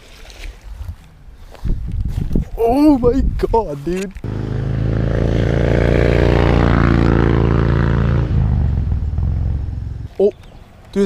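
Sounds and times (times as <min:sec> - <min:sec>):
vehicle engine hum: 0:04.2 - 0:10.4.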